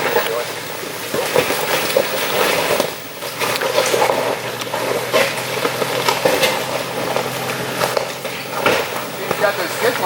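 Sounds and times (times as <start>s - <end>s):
engine running slowly: 0.0s - 10.0s
tyres crunching on rock: 1.0s - 10.0s.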